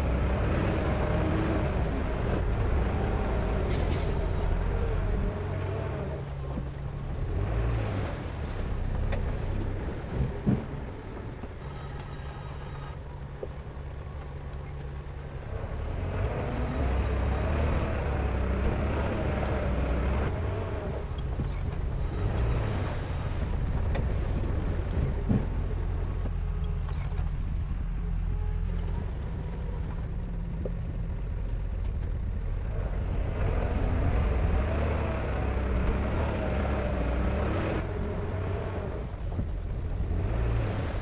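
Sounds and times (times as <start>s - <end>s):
heavy diesel engine running: 8.7s - 37.8s.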